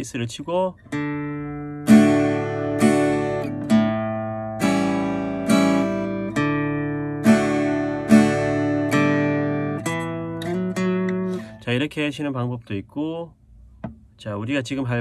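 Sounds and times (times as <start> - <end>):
acoustic guitar strumming waltz: 0.8 - 11.8.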